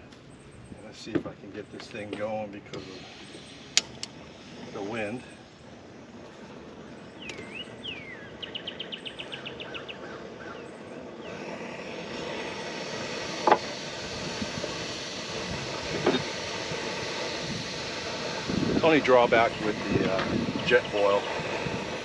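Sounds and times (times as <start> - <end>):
birds calling and trilling: 0.0 - 13.0, 18.3 - 22.0
camp stove gas hissing: 0.0 - 22.0
igniter clicks: 3.7 - 4.2, 7.2 - 7.7.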